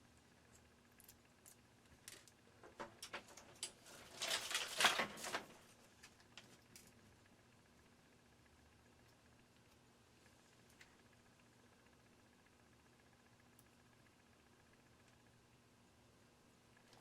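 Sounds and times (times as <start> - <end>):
small plastic parts clicking and rattling: 0.5 - 7.0.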